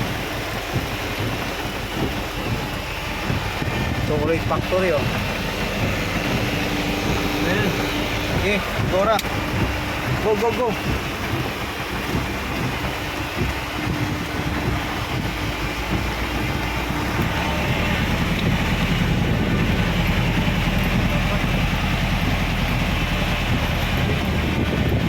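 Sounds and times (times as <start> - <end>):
road noise: 0.0 - 25.0
vehicle engine running: 0.0 - 25.0
wind: 0.0 - 25.0.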